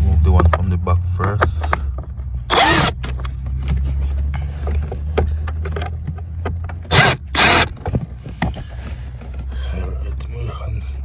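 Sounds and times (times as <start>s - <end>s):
cordless drill running: 2.5s - 3.0s, 6.9s - 7.7s.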